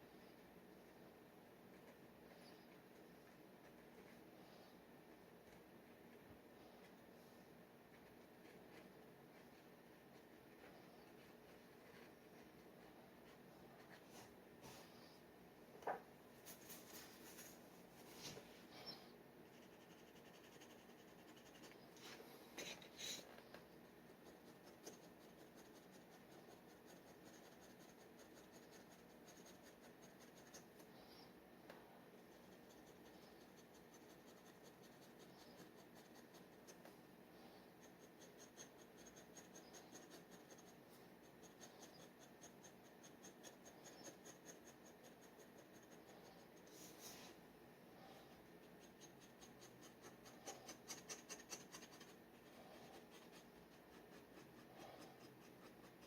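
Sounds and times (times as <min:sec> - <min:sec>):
dip pen scratching on paper: 0:24.1 - 0:30.7, 0:37.8 - 0:47.2, 0:48.8 - 0:56.0.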